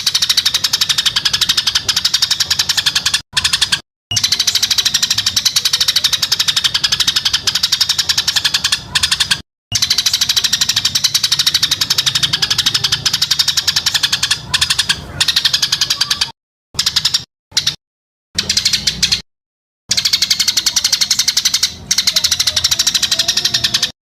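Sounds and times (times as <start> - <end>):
rapid rattling bird trill: 0.0 - 17.8, 18.4 - 19.2, 19.9 - 24.0.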